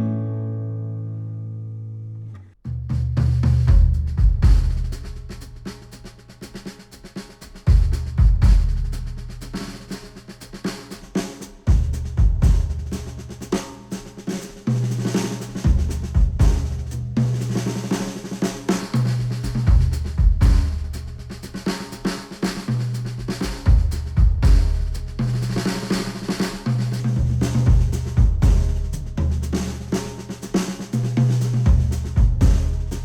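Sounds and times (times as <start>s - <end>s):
bass line: 0.0s - 5.3s, 19.0s - 21.3s, 22.9s - 25.7s, 26.9s - 30.0s, 31.0s - 33.0s
drum kit: 2.7s - 33.0s.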